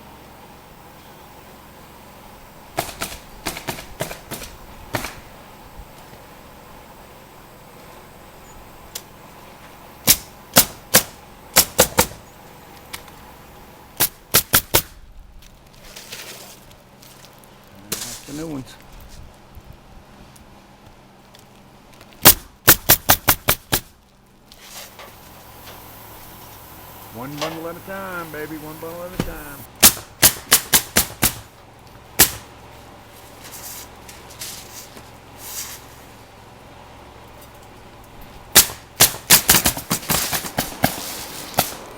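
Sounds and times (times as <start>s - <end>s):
hammer striking nails into shingles: 2.8s - 5.2s, 10.0s - 12.2s, 14.0s - 15.0s, 22.2s - 23.9s, 29.0s - 31.5s, 32.2s - 32.5s, 38.5s - 41.8s.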